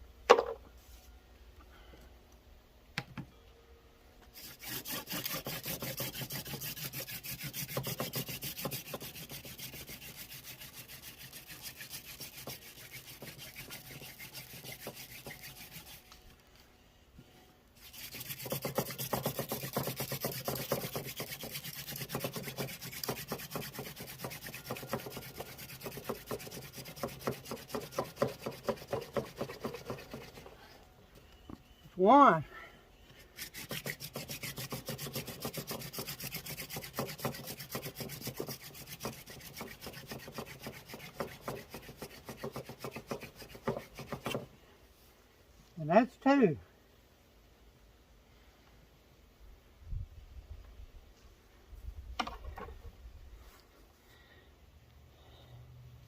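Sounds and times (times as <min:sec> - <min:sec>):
hand drill rasping on wood: 0:04.4 - 0:16.2, 0:17.8 - 0:30.7, 0:33.2 - 0:44.5.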